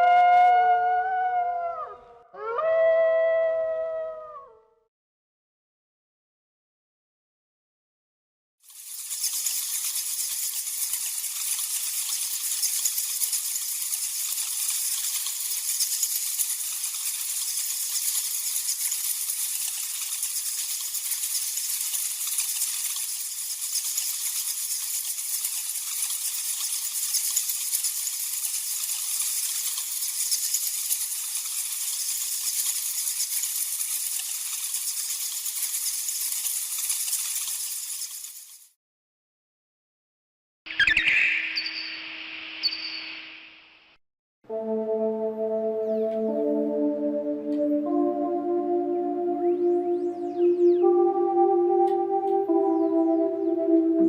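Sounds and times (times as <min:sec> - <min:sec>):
bats chittering and clicking: 0:08.6 - 0:38.7.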